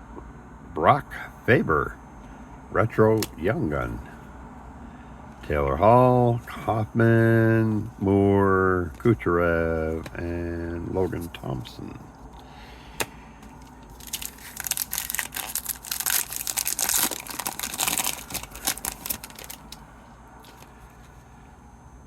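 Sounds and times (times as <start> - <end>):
wrapper tearing and crinkling: 13.9 - 19.8.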